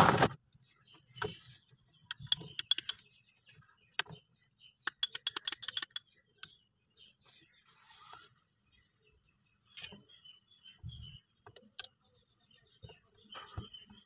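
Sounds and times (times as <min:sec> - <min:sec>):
clicks of small hard parts: 0:02.1 - 0:03.0, 0:04.8 - 0:06.1.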